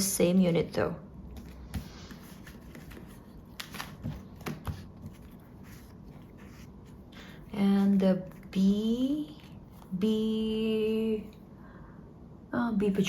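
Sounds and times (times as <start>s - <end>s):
cards rustling: 1.4s - 10.0s.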